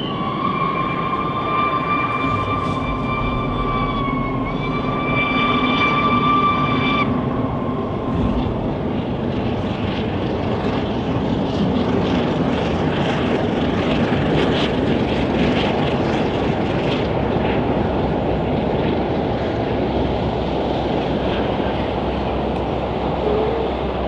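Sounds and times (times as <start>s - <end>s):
train whistle: 0.0s - 8.5s, 23.2s - 24.0s
steam locomotive passing: 0.0s - 24.0s.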